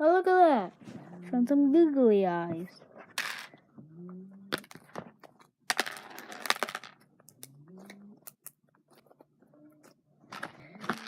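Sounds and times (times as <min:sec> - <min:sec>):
plastic items crackling and clicking: 0:04.5 - 0:11.0.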